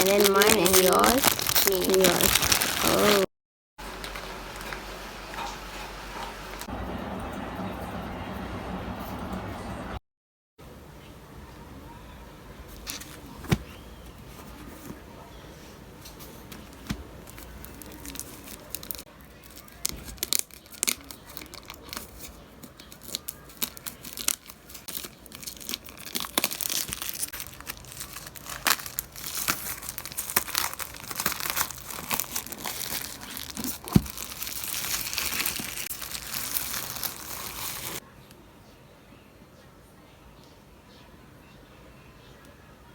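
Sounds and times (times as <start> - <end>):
plastic packaging crinkling: 0.0 - 3.3, 16.3 - 38.0.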